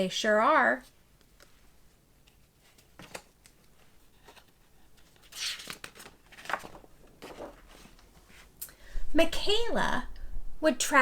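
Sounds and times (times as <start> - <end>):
paper page rustling: 2.3 - 8.5.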